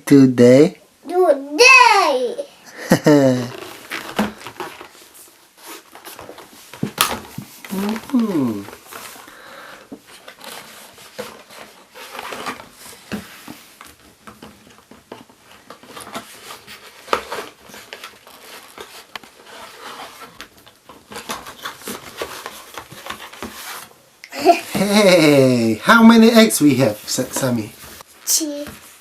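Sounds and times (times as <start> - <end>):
wrapper packaging crinkling: 3.4 - 13.0.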